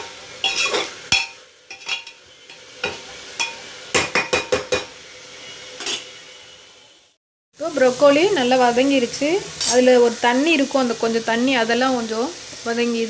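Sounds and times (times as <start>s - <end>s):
vegetables sizzling in oil: 0.0s - 13.0s
spoon clinking against pot: 0.4s - 4.9s.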